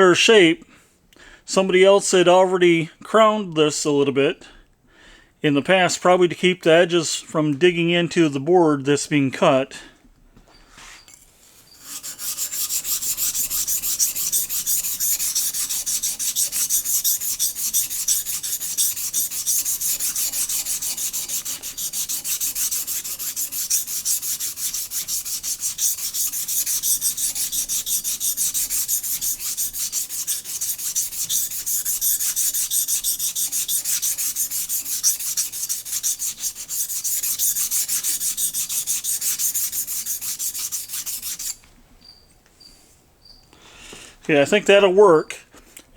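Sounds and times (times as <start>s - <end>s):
blade rasping on whetstone: 11.4s - 41.6s.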